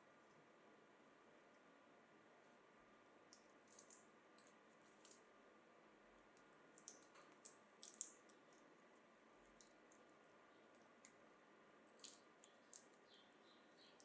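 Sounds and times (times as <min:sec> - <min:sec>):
small clicks and ticks: 0:03.3 - 0:05.3, 0:06.2 - 0:11.2, 0:11.9 - 0:14.0.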